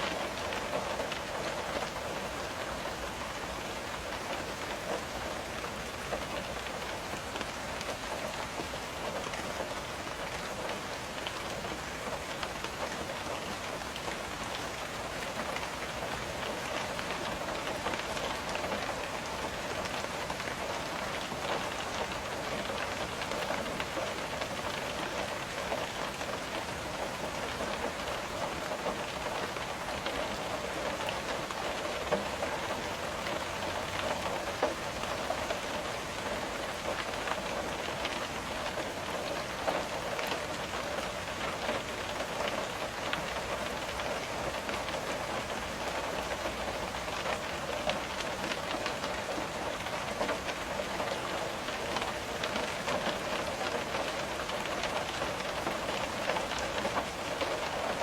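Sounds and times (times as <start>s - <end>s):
rain tapping on window glass: 0.0s - 58.0s.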